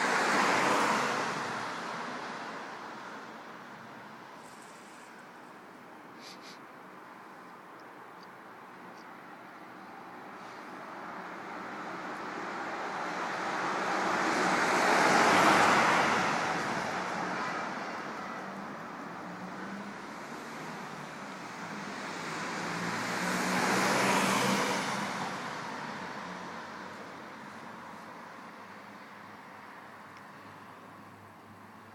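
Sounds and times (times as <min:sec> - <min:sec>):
car driving past: 0:11.6 - 0:18.1, 0:19.2 - 0:27.0.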